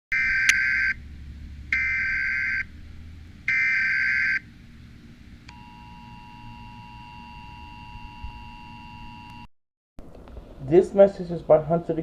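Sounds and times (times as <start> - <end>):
harsh buzzing data bursts: 0.1 - 1.0, 1.7 - 2.7, 3.5 - 4.5.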